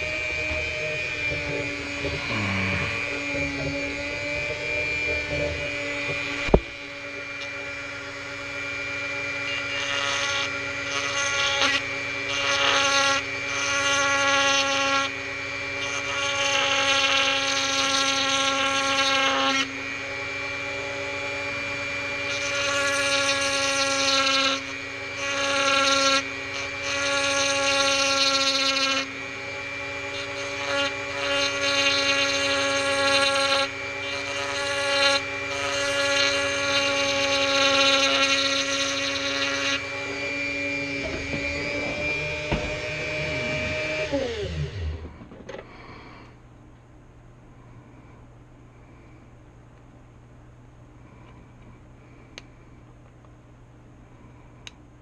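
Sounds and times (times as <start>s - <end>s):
cutter rasping into plastic: 0.0s - 7.8s, 9.4s - 15.1s, 22.2s - 29.1s, 30.1s - 40.1s, 40.7s - 45.7s
electric motor running: 0.0s - 46.3s.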